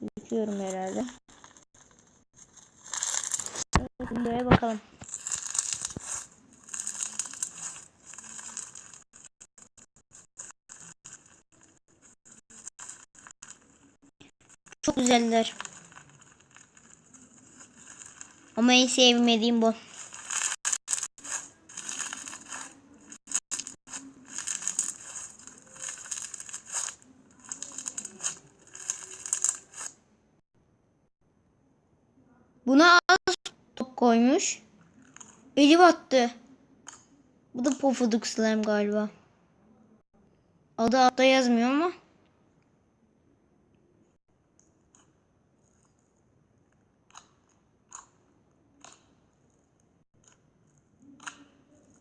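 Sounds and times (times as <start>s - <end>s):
slime crackling and popping: 5.0s - 18.6s, 19.9s - 29.9s
slime crackling when squeezed: 20.0s - 29.9s.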